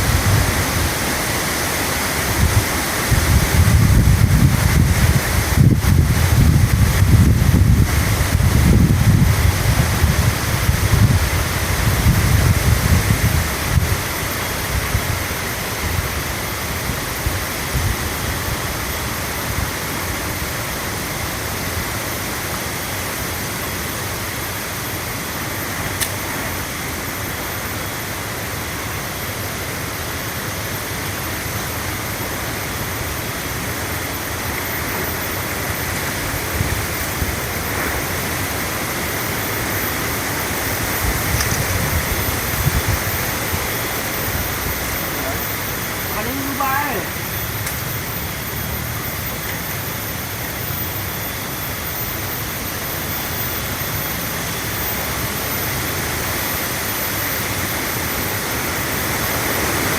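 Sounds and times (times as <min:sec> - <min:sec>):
wind buffeting microphone: 0:00.0 - 0:01.5, 0:02.2 - 0:16.2, 0:35.1 - 0:46.0
steady rushing outdoor noise: 0:00.0 - 0:59.9.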